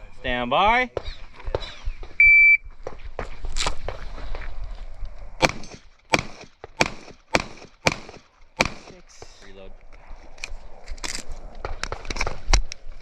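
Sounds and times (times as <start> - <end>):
shot timer beep: 2.2 - 2.6
airsoft pistol shots: 5.4 - 9.0.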